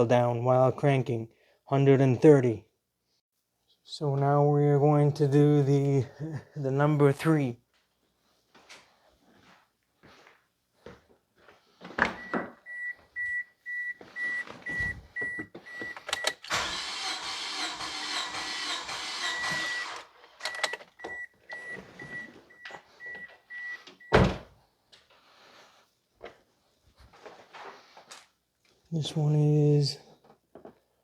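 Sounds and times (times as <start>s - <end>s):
car warning chime beeping: 12.2s - 16.4s, 19.2s - 24.2s
starter cranking engine: 16.5s - 20.1s.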